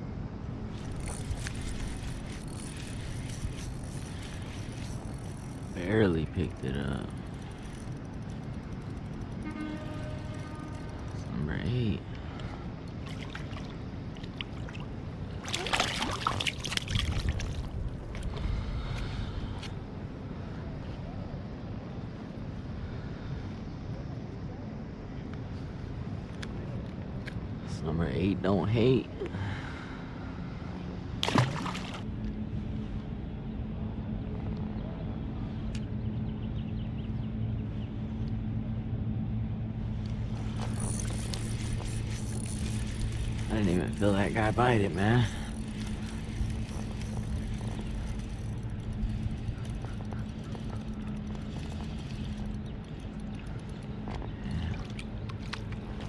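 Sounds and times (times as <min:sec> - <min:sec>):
boat engine drone: 0:00.0 - 0:56.0
water splashing and trickling: 0:00.7 - 0:08.9, 0:12.8 - 0:18.4, 0:31.2 - 0:32.1, 0:40.3 - 0:56.0
wind rumble on microphone: 0:12.2 - 0:27.6, 0:32.0 - 0:56.0.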